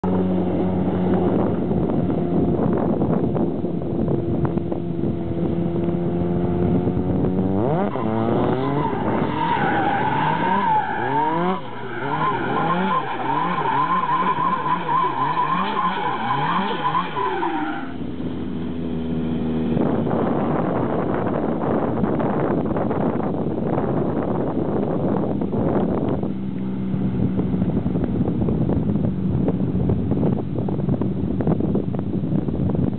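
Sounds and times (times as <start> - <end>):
car engine revving: 4.0 - 21.4.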